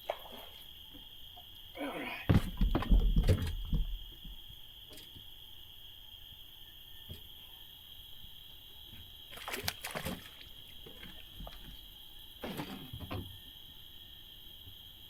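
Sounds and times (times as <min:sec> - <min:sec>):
night insects droning: 0:00.0 - 0:15.0
fish splashing at surface: 0:09.3 - 0:11.8.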